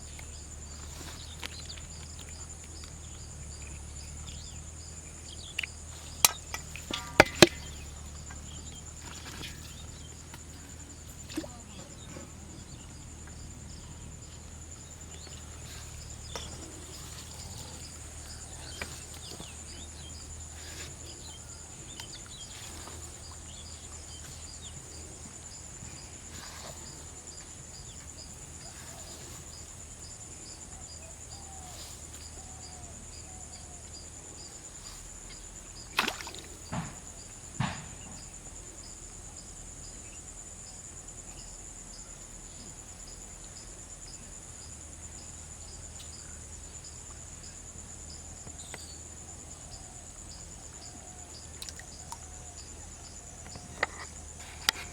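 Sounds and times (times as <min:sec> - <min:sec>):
crickets trilling: 0:00.0 - 0:54.9
faint clicks: 0:01.1 - 0:04.4, 0:51.6 - 0:52.7, 0:53.4 - 0:54.9
sharp knocks: 0:06.2 - 0:07.9.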